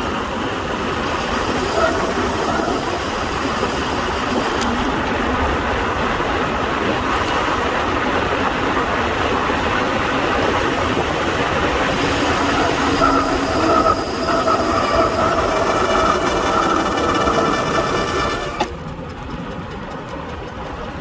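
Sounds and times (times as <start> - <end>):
bicycle disc brakes squealing: 11.9 - 18.7.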